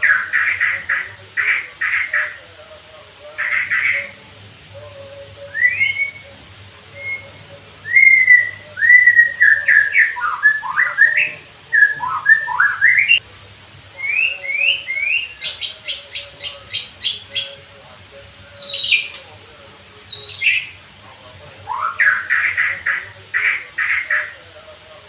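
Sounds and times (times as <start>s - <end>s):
bird fast repeated sharp notes: 0.0s - 2.4s, 3.4s - 4.2s, 21.7s - 24.4s
bird singing whistled phrases: 5.5s - 13.2s, 14.0s - 17.6s, 18.6s - 19.2s, 20.1s - 20.8s, 21.7s - 24.4s.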